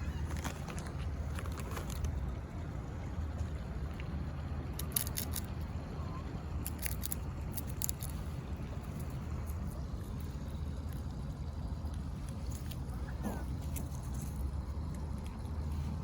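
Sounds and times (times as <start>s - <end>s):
low rumble of wind: 0.0s - 16.0s
squirrel rapid clicking: 4.7s - 5.5s, 6.6s - 8.2s.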